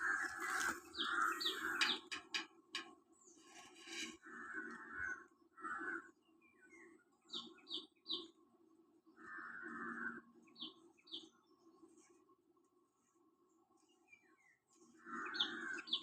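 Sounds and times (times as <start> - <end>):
rasping bird calls: 0.0 - 6.1
small birds chirping: 0.0 - 8.5, 9.1 - 16.0.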